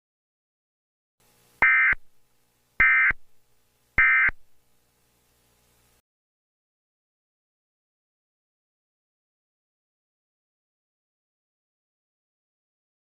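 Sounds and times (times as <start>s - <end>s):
buzzy electronic data tones: 1.6s - 2.1s, 4.0s - 4.4s.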